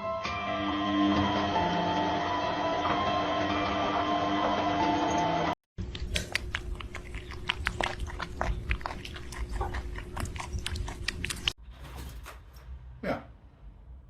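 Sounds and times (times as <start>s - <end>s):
pet chewing crunchily: 5.8s - 11.6s.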